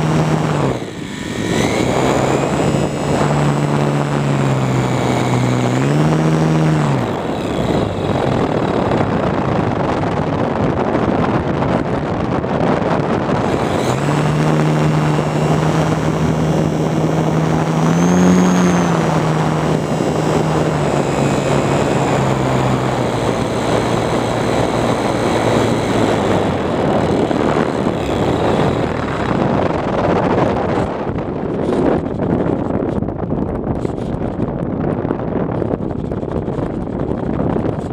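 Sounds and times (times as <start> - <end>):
airflow rushing: 0.0 - 9.7, 13.2 - 31.1
propeller motor humming: 0.0 - 37.9.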